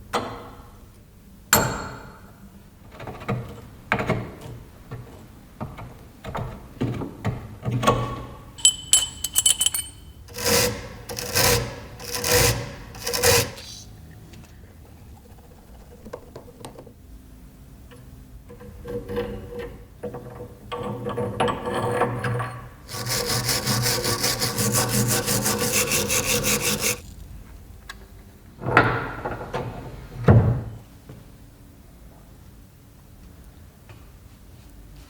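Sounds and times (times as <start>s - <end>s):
rubbing and scraping on wood: 10.4s - 13.9s, 22.9s - 27.2s.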